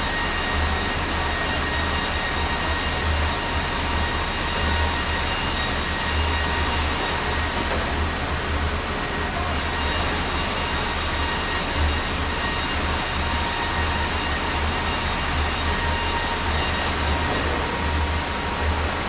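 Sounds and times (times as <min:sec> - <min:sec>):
saw blade cutting log: 0:09.5 - 0:17.5.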